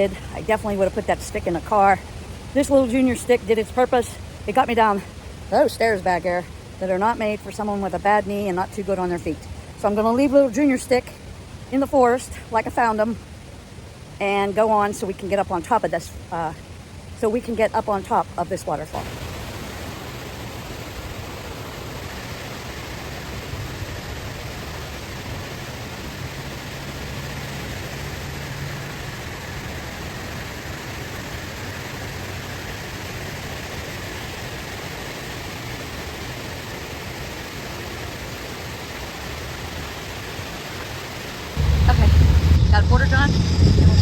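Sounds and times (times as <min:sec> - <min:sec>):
waterfall rushing: 0:18.2 - 0:43.3.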